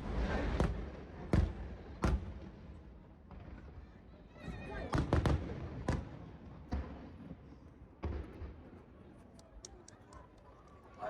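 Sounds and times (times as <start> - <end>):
distant fireworks booms: 8.0 - 8.6.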